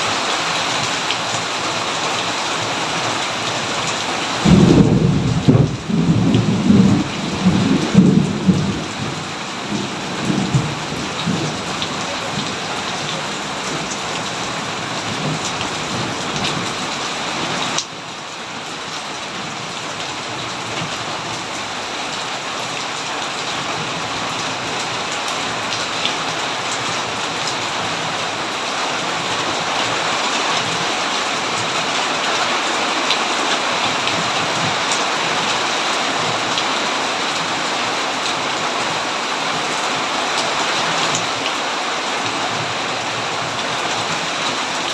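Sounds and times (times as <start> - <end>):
heavy rain: 0.0 - 44.9
thunder rumble: 4.4 - 16.8.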